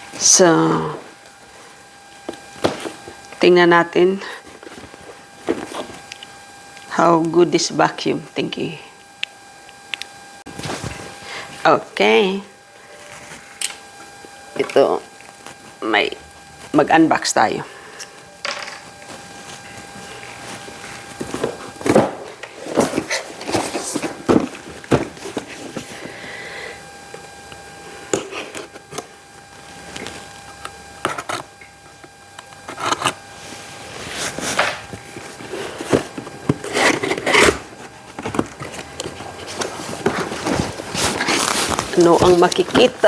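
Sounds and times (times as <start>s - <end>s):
cardboard packaging handled: 19.0s - 26.2s, 33.9s - 43.0s.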